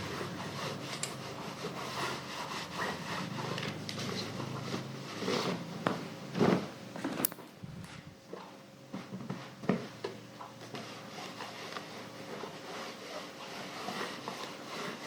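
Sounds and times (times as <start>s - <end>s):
iron sliding over fabric: 10.7s - 15.0s.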